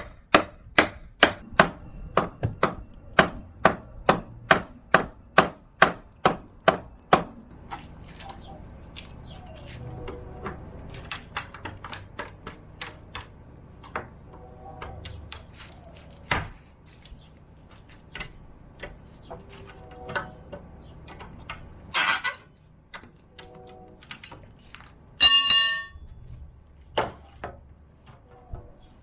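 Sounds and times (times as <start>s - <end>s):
hand tools knocking on wood: 0.0s - 7.4s.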